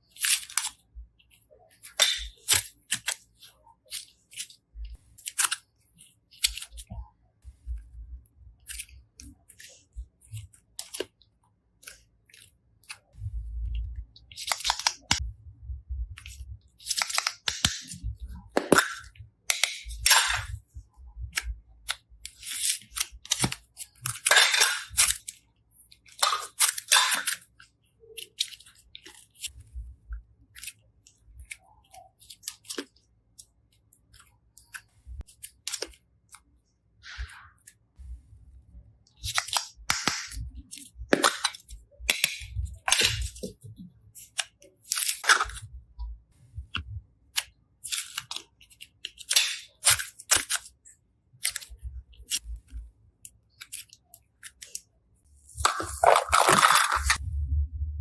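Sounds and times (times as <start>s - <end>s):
slime squelching: 0.0s - 38.0s, 39.1s - 57.6s
slime crackling and popping: 55.4s - 57.2s.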